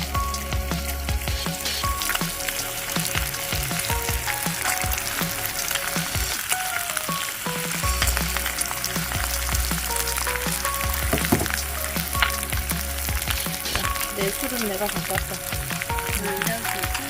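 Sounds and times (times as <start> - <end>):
meat sizzling and crackling: 0.0 - 17.0.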